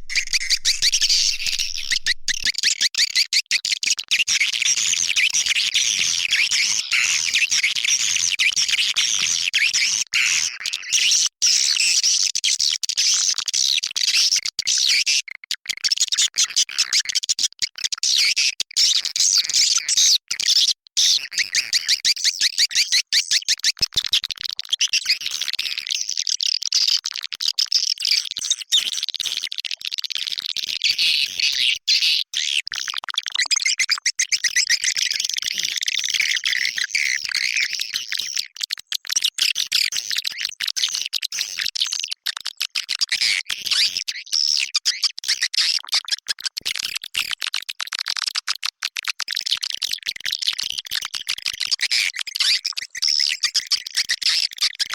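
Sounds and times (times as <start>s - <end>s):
swiftlets twittering and chirping: 0.0s - 2.5s.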